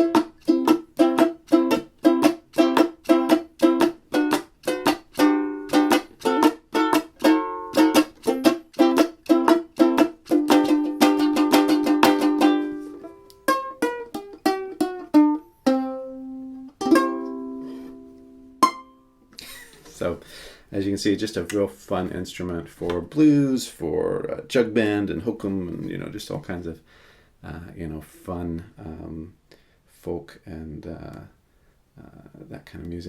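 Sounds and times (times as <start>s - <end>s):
ukulele playing blues: 0.0s - 20.1s.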